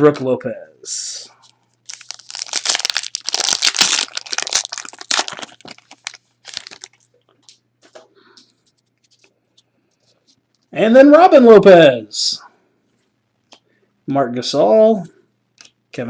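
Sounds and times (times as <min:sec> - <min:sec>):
wrapper crinkling and tearing: 0:01.8 - 0:07.2.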